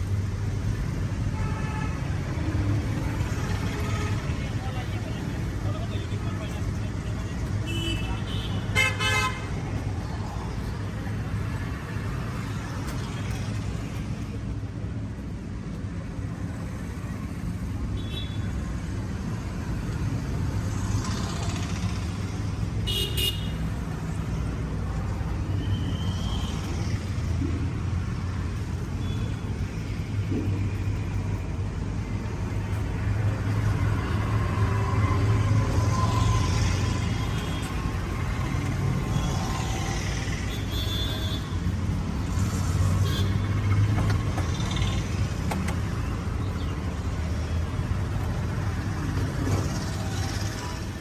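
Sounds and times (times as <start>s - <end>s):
traffic engine rumble: 0.0s - 51.0s
car horn toot: 22.9s - 23.6s, 40.5s - 41.6s.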